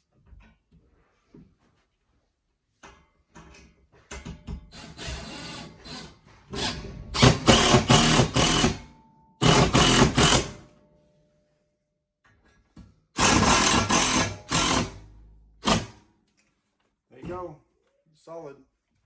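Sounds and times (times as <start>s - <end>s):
power drill driving screws: 4.7s - 8.8s, 9.4s - 10.6s, 13.2s - 15.0s.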